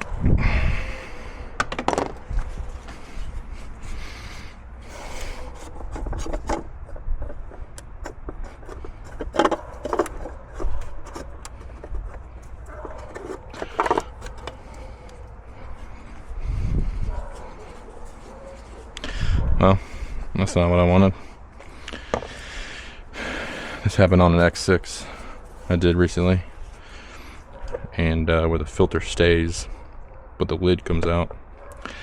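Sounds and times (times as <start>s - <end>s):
scraping and rubbing: 1.9s - 19.2s, 23.2s - 27.8s.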